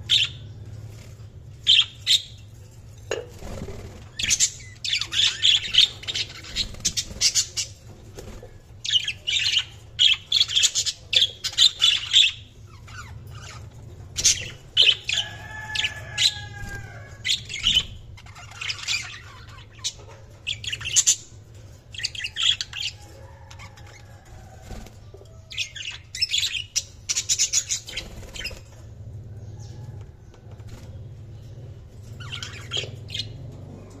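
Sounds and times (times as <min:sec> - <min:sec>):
steady low hum: 0:00.0 - 0:34.0
budgerigars chirping: 0:00.1 - 0:00.5, 0:01.6 - 0:02.4, 0:04.2 - 0:07.8, 0:08.9 - 0:21.3, 0:32.2 - 0:33.4.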